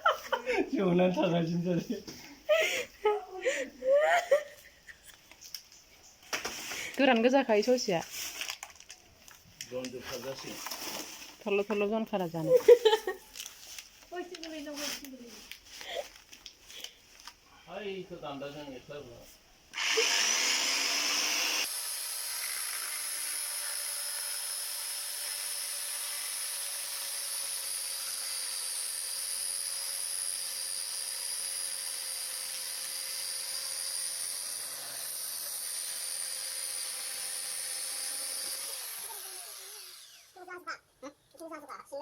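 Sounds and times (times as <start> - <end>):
electric chainsaw whining: 19.7 - 40.4.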